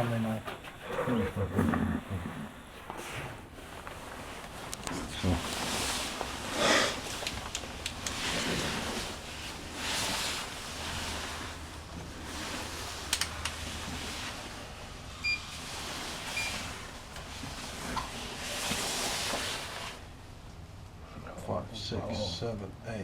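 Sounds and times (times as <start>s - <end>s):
rustling and scraping handling: 2.7s - 20.2s
sharp clicks: 7.2s - 8.2s, 13.1s - 13.6s.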